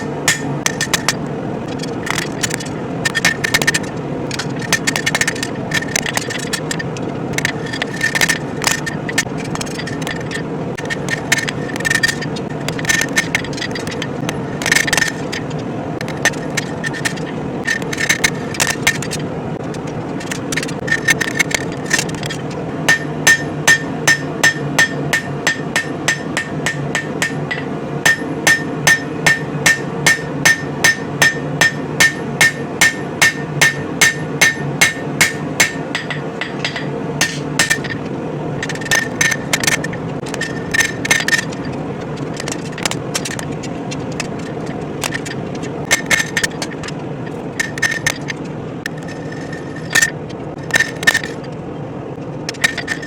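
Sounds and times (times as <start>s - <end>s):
hammer ringing on anvil: 0.0s - 0.6s, 22.9s - 37.9s.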